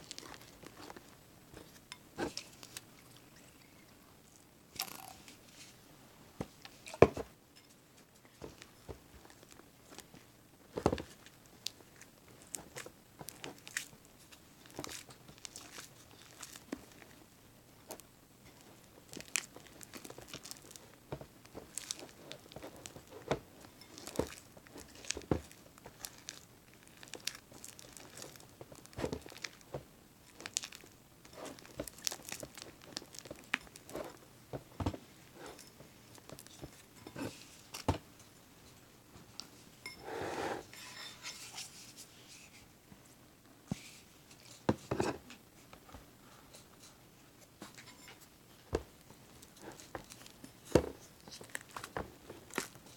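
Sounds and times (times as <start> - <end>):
sticky slime crackles and squelches: 0.0 - 1.1, 11.0 - 17.2, 18.6 - 34.2, 49.4 - 52.9.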